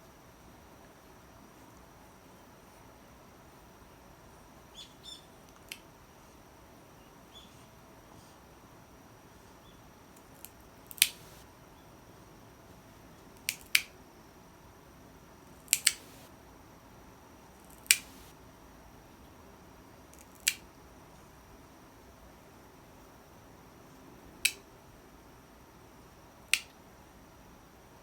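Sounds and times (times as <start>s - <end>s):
nail clippers snipping claws: 11.0s - 11.4s, 15.7s - 16.3s, 17.9s - 18.3s.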